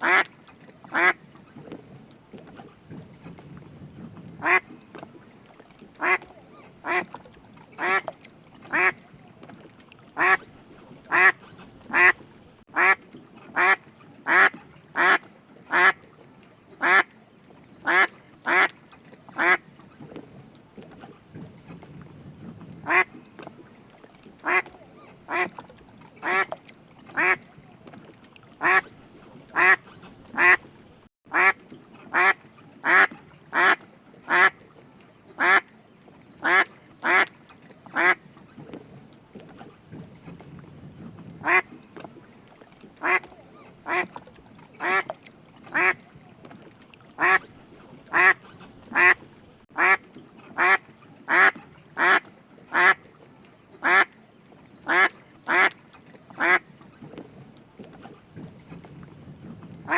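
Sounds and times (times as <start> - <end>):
duck quacking: 0.0 - 0.3, 0.9 - 1.2, 4.4 - 4.7, 6.0 - 7.1, 8.7 - 9.0, 10.2 - 10.4, 11.1 - 12.2, 12.8 - 13.0, 13.6 - 16.0, 17.9 - 18.7, 22.8 - 23.1, 24.4 - 24.7, 25.3 - 25.5, 28.6 - 28.8, 29.6 - 30.6, 31.3 - 34.5, 36.4 - 37.3, 38.0 - 38.2, 41.4 - 41.7, 43.0 - 43.3, 43.9 - 44.1, 44.8 - 45.1, 47.2 - 47.4, 48.1 - 49.2, 49.8 - 50.0, 50.6 - 53.0.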